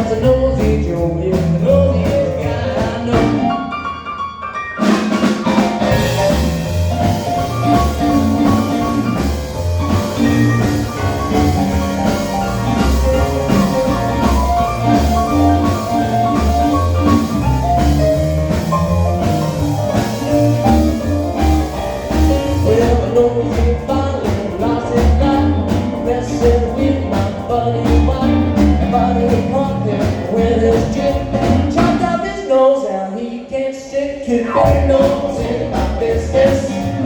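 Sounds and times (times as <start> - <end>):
drum kit beat: 0.0 - 3.7, 4.8 - 32.2, 34.5 - 37.0
rock band playing instrumental: 0.0 - 32.2, 34.5 - 37.0.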